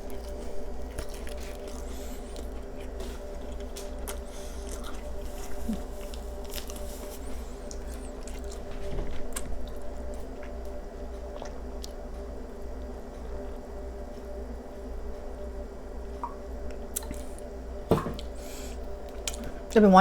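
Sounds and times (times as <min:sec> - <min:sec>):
crunchy chewing: 0:00.0 - 0:12.0
low electrical hum: 0:00.0 - 0:20.0.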